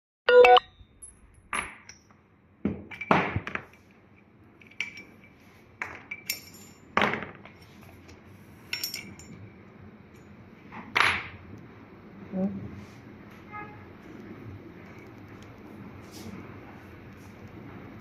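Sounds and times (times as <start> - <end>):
metal dumbbell parts clinking: 6.0 - 6.9, 8.7 - 9.4.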